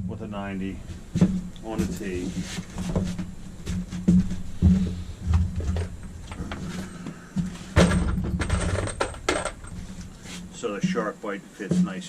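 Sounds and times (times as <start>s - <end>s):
low hum: 0.0s - 11.0s
pipe fittings clicking and knocking: 7.4s - 10.2s.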